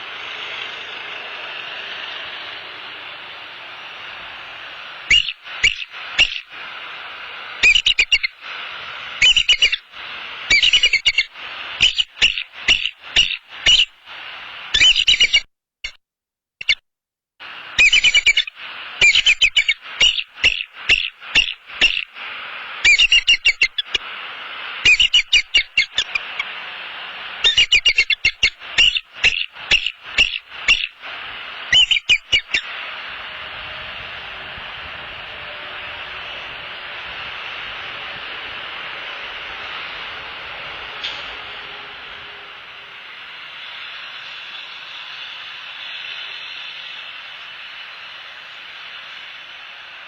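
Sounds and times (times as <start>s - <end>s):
eagles alarm calling: 0.0s - 14.0s, 14.8s - 15.4s, 17.7s - 24.0s, 24.8s - 26.7s, 27.3s - 42.8s
steady hiss: 0.0s - 15.4s, 17.4s - 50.0s.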